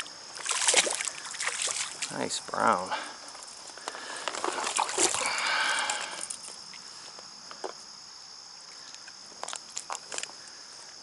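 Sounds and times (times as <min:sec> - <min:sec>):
high-pitched insect chirring: 0:04.6 - 0:11.0.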